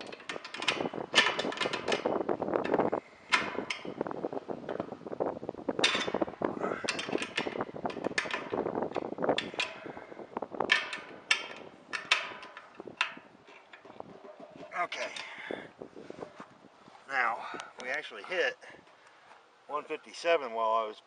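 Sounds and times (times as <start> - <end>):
metallic clicks and clanks: 0.0 - 4.9, 5.8 - 15.5.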